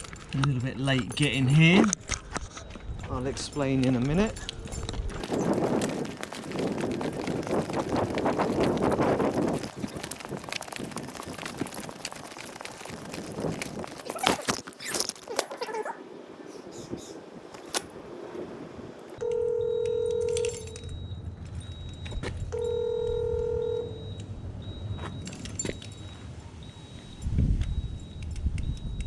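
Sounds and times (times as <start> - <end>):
handling clatter and clicks: 3.5 - 19.2, 20.0 - 21.0.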